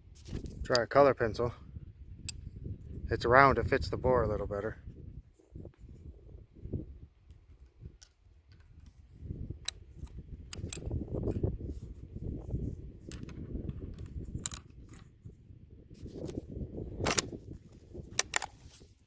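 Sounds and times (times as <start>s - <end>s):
low rumble of handling and wind: 0.0s - 19.0s
rifle bolt metallic clicks: 9.6s - 11.4s, 14.0s - 15.0s, 17.0s - 17.4s, 18.1s - 18.6s.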